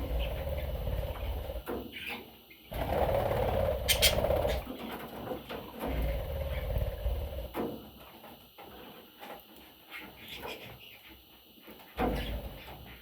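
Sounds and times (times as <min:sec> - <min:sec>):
budgerigar chicks calling: 0:03.8 - 0:04.7.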